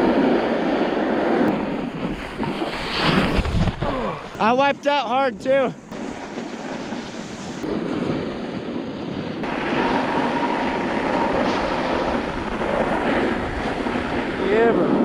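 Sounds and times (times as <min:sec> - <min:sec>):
wind on microphone: 0:00.0 - 0:15.0.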